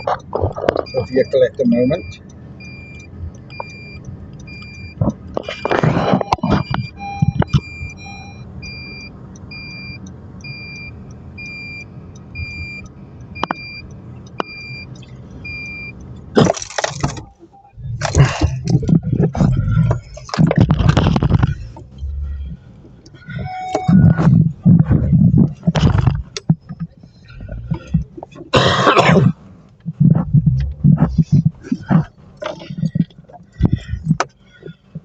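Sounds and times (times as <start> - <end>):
road rumble: 0.0 - 35.0
electronic beeper chirping: 5.6 - 9.0, 23.3 - 24.2.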